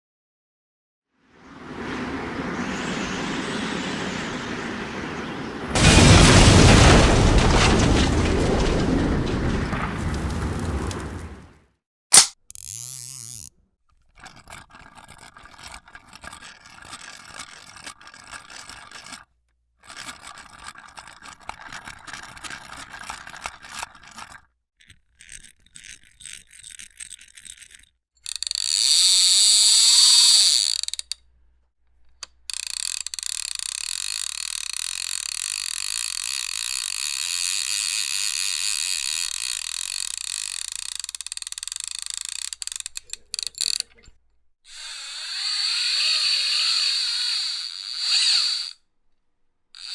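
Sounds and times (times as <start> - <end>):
mechanical clicking and ratcheting: 12.1 - 48.8
mechanical ticks: 12.2 - 31.3, 32.0 - 44.1
pitch-gliding whir: 44.7 - 48.8
steady mechanical whir: 44.7 - 48.8.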